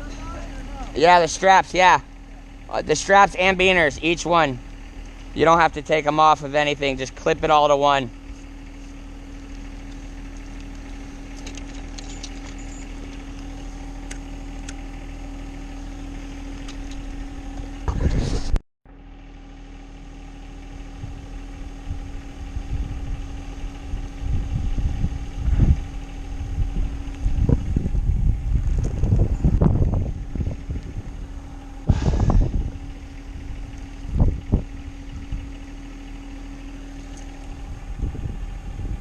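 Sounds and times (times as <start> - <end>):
engine idling: 0.0 - 39.0
low rumbles on microphone: 21.8 - 35.6, 37.3 - 39.0.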